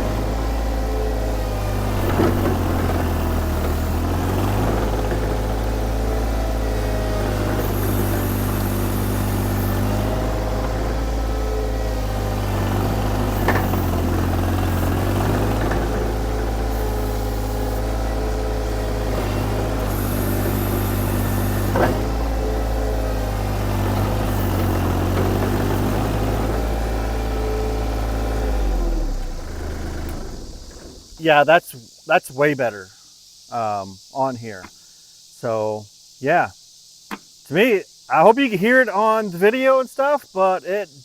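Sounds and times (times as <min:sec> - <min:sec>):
skid steer engine running: 0:00.0 - 0:31.2.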